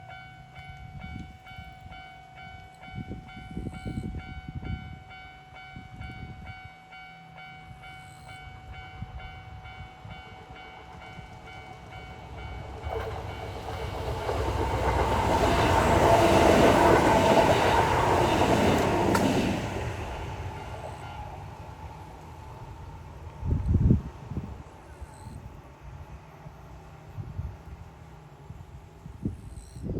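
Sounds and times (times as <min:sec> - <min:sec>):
level-crossing warning bell: 0:00.0 - 0:23.5
electric train passing: 0:00.0 - 0:29.8.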